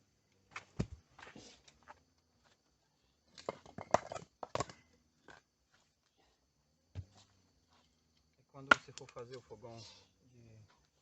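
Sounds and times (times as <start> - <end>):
stones knocking together: 3.3 - 5.4.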